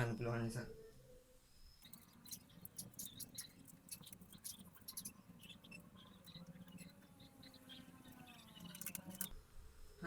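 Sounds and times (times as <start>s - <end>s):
faint clicking and rustling cables: 8.1s - 9.4s.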